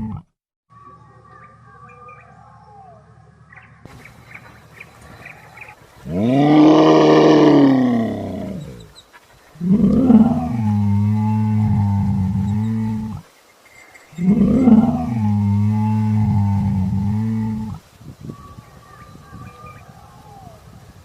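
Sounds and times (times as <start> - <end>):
large animal drawn-out call: 6.0 - 8.9, 9.6 - 13.2, 14.2 - 17.8
light chirps: 12.3 - 14.4.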